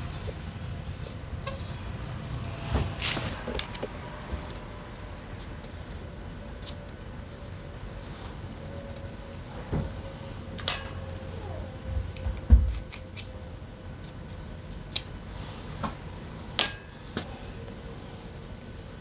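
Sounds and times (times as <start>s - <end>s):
sharp metal clink ringing: 10.6s - 11.1s, 16.6s - 17.0s
metallic clicks and clinks: 10.6s - 11.2s.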